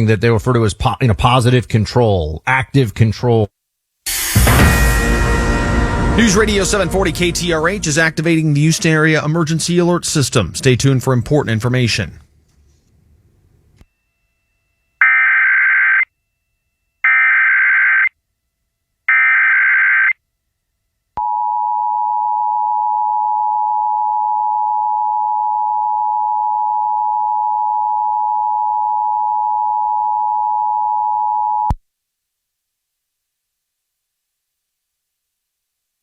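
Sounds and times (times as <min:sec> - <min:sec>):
steady harsh alert tone: 0:04.1 - 0:12.0.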